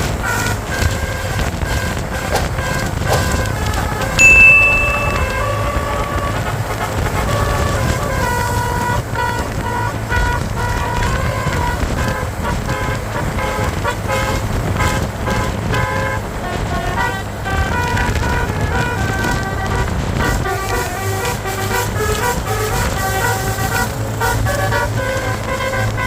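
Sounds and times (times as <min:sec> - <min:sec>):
low rumble of bus: 0:00.0 - 0:04.5, 0:05.4 - 0:26.0
bus horn playing a tune: 0:05.4 - 0:26.0.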